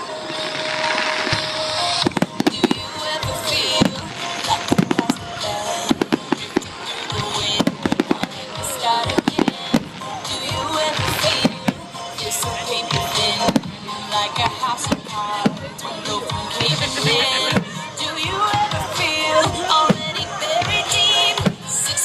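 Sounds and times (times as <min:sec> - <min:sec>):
fireworks crackling: 0:00.0 - 0:22.0
music: 0:00.0 - 0:22.0
fireworks bangs: 0:00.2 - 0:15.7.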